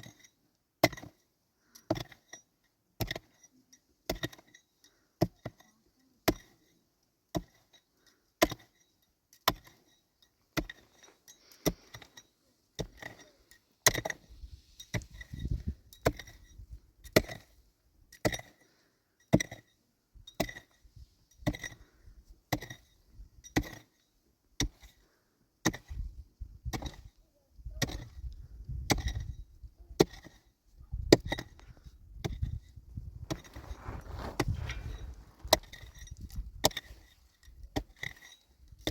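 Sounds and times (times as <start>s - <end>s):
hand tool chopping with ring: 19.3s - 19.7s, 20.3s - 20.7s, 23.5s - 23.8s.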